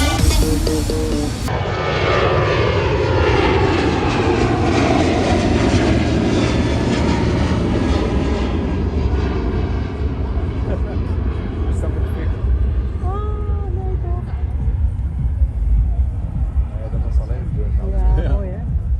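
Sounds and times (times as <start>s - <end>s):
music: 0.0s - 1.5s, 14.4s - 18.9s
loud vehicle engine: 0.0s - 2.0s.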